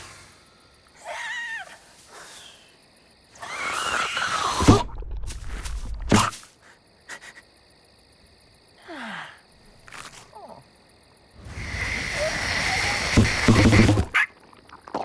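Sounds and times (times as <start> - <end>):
insects chirring: 0.0 - 15.0
steady rushing noise: 11.4 - 14.1.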